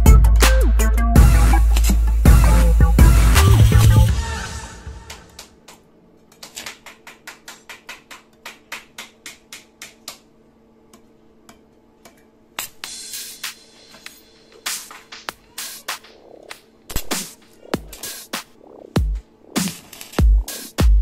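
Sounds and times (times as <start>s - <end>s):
background music: 0.0s - 5.5s
faint steady hum: 1.5s - 21.0s.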